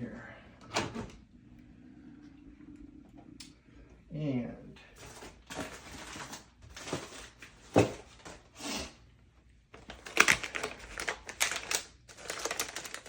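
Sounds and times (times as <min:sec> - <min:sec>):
rustling and crinkling: 0:04.9 - 0:08.5, 0:09.7 - 0:13.0.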